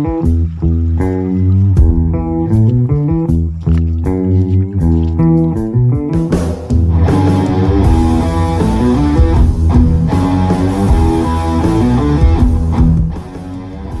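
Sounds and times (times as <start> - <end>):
guitar-led instrumental music: 0.0 - 14.0.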